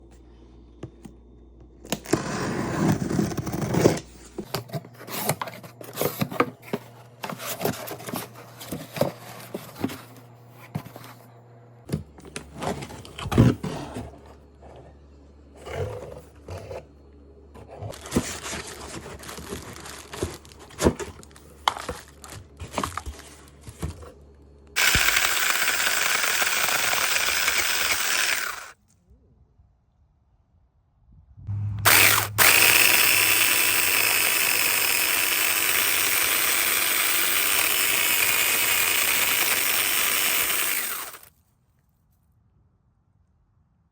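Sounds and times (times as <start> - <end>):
electric mini chainsaw running: 24.8 - 28.8, 31.8 - 41.3.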